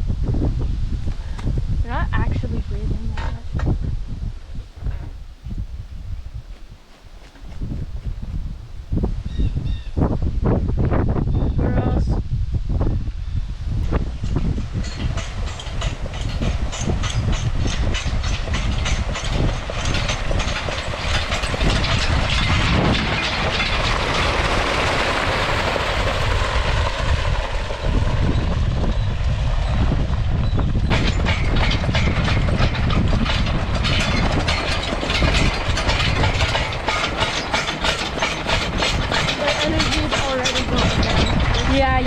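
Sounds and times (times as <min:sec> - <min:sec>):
steel track clanking and scraping: 0:04.6 - 0:09.1, 0:13.8 - 0:28.4, 0:30.5 - 0:42.0.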